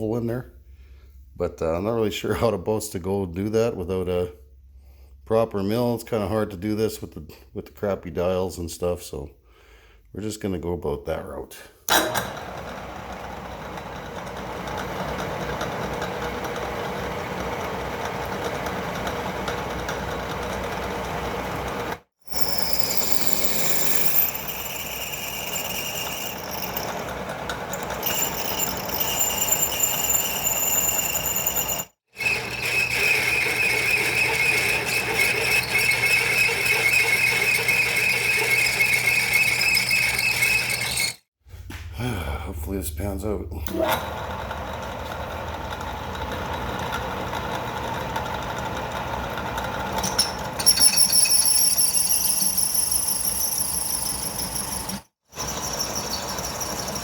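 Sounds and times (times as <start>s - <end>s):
lathe cutting metal squeal: 22.3s - 41.2s, 50.0s - 57.0s.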